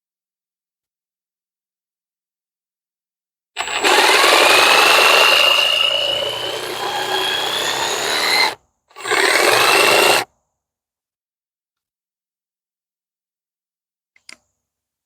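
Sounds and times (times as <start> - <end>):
jigsaw cutting wood: 3.6 - 10.2.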